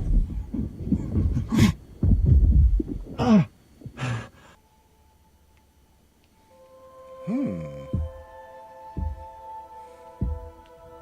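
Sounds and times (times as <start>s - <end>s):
deep rumbling: 0.0s - 4.0s
faint steady tone: 0.0s - 11.0s.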